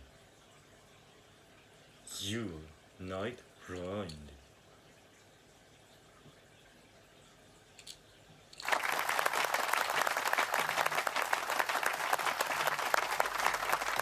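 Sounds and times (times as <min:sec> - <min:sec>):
audience applause: 0:08.6 - 0:14.0.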